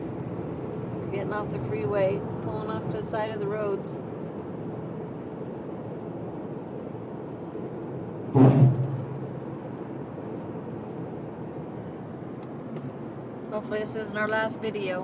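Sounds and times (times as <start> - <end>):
car road and engine noise: 0.0 - 15.0
loud thump: 8.4 - 9.2.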